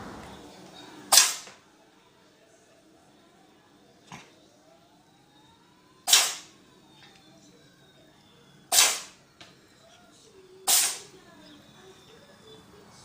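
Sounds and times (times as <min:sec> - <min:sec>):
animal sneezing: 0:08.7 - 0:09.1, 0:10.7 - 0:11.1.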